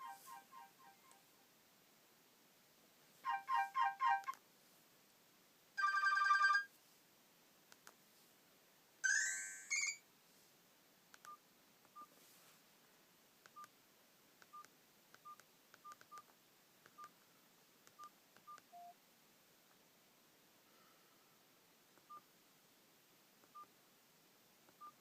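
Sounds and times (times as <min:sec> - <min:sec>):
phone ringtone rising notes: 0:00.0 - 0:01.1, 0:03.3 - 0:04.3, 0:09.0 - 0:10.0
phone keypad beeps: 0:03.3 - 0:04.4, 0:18.0 - 0:18.9.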